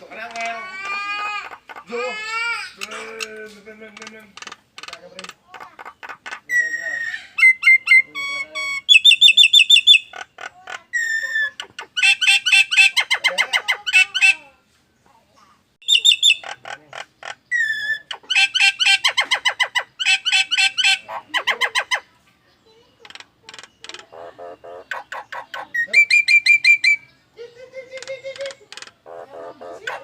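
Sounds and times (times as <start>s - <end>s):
harsh alarm-like bird notes: 4.0s - 14.4s, 15.8s - 22.1s, 22.7s - 27.3s
myna whistled calls: 6.5s - 10.2s, 11.0s - 14.4s, 15.8s - 16.6s, 17.2s - 22.1s, 23.6s - 27.3s.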